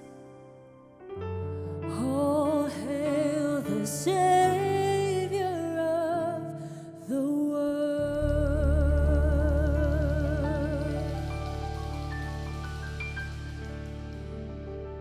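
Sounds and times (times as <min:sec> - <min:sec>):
bass: 0:08.0 - 0:15.0.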